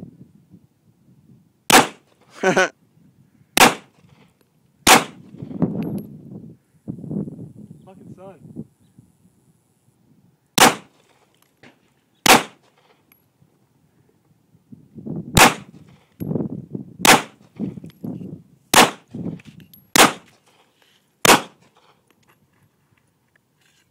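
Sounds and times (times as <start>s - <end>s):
gunshots: 1.7s - 2.1s, 3.6s - 4.0s, 4.9s - 5.2s, 10.6s - 11.0s, 12.2s - 12.7s, 15.4s - 15.7s, 17.0s - 17.4s, 18.7s - 19.1s, 20.0s - 20.3s, 21.2s - 21.6s.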